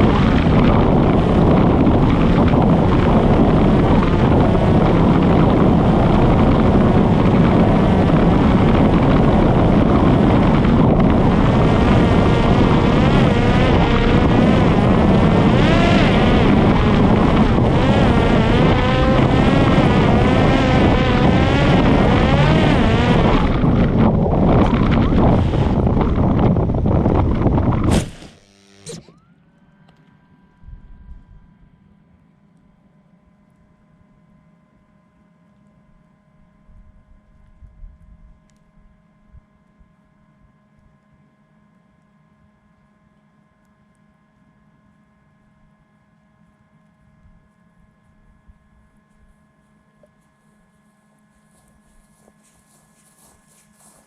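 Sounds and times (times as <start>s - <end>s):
wind noise on microphone: 0.0s - 29.1s, 30.6s - 31.6s, 36.6s - 39.9s
drone motor and propeller whining: 0.0s - 33.6s, 35.5s - 54.0s.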